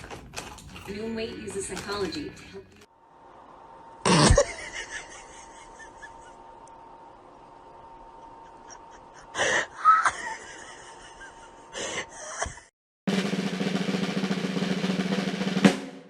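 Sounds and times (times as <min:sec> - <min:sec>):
drum roll: 0:13.1 - 0:16.0.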